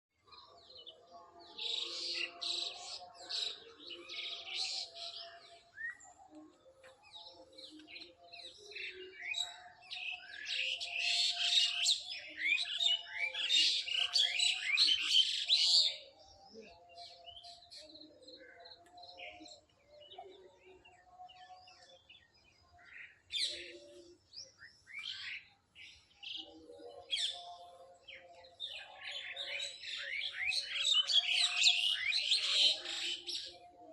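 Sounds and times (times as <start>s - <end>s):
birds chirping and trilling: 0.2s - 33.9s.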